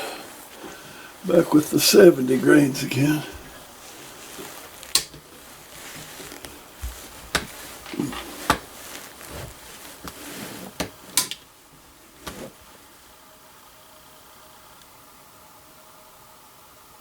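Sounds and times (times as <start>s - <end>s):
rifle handling clicks and knocks: 10.8s - 11.5s.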